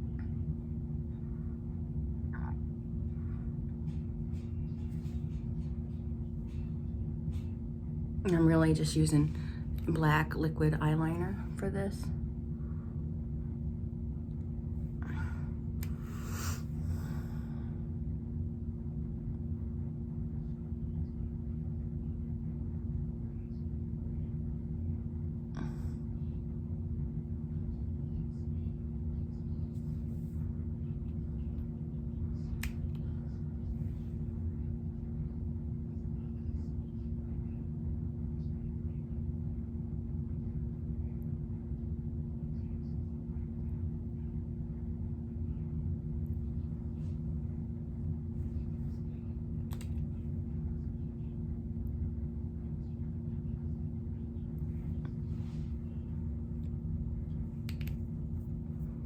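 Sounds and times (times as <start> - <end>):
low background hum: 0.0 - 59.0
faint clicks and taps: 56.6 - 58.1.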